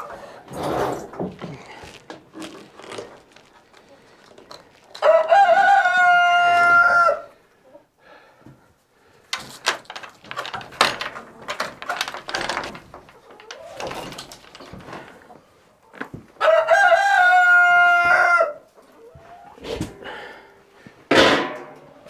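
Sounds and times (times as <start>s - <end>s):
chickens scuffling: 0.0s - 7.8s, 8.4s - 22.0s
chickens clucking: 0.0s - 8.0s, 10.4s - 20.4s
rooster crowing: 5.0s - 7.4s, 16.4s - 18.6s.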